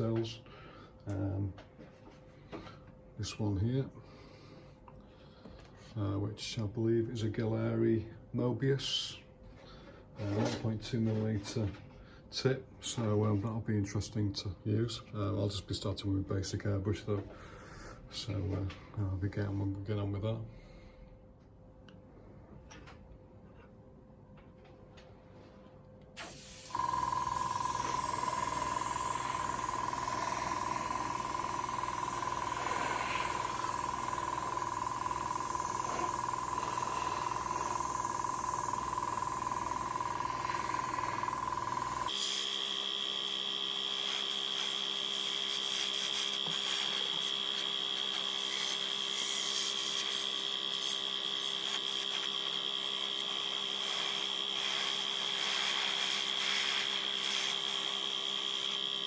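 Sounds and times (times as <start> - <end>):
airbrush compressor whine and hiss: 26.2 - 59.0.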